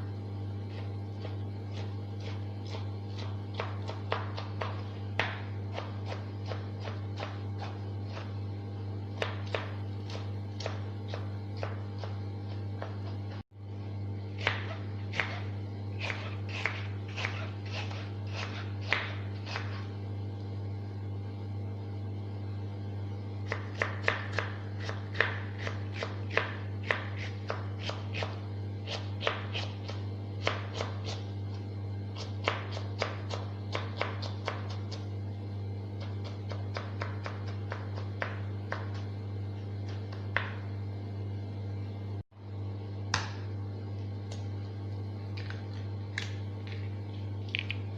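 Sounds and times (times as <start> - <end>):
low electrical hum: 0.0 - 47.9.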